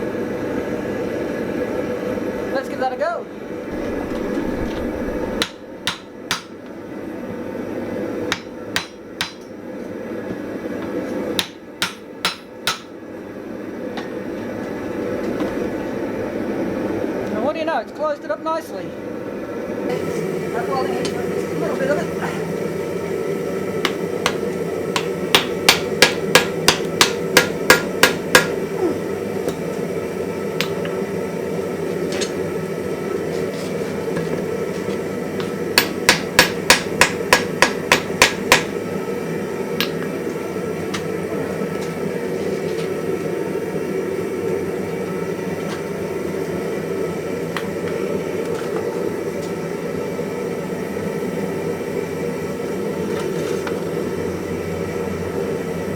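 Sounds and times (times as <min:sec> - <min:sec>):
steady drone: 0:03.4 - 0:08.4
hammer striking hot iron on anvil: 0:05.2 - 0:06.7, 0:08.2 - 0:09.6, 0:11.3 - 0:13.0, 0:23.8 - 0:28.6, 0:30.6 - 0:30.9, 0:35.4 - 0:38.8, 0:39.8 - 0:40.1.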